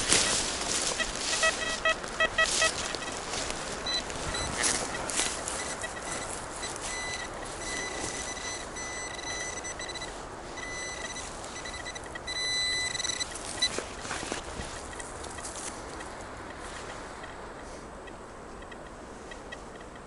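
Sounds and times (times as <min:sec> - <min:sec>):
metal detector tone: 0:00.0 - 0:17.4
road noise: 0:00.0 - 0:20.0
wind: 0:00.0 - 0:20.0.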